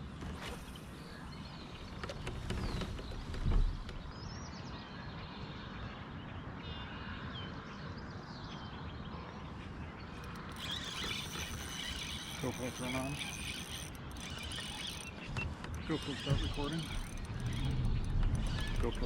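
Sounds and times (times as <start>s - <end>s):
faint bird chirping: 8.4s - 19.0s.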